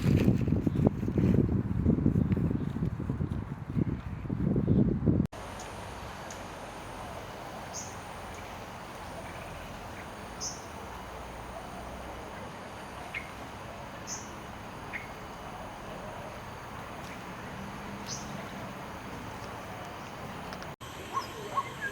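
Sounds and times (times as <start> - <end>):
steady background hiss: 5.4 - 21.9.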